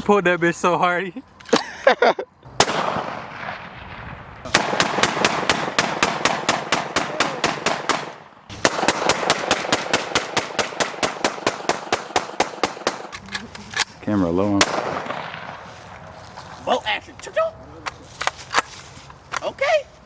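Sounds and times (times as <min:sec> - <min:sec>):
gunshot: 0:02.6 - 0:13.0, 0:14.6 - 0:15.6
rapid gunfire: 0:04.5 - 0:13.1.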